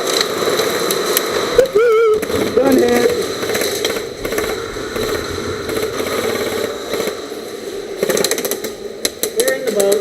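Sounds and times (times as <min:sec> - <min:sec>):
steady mechanical hum: 0:00.0 - 0:10.0
airsoft guns firing bursts: 0:02.2 - 0:10.0.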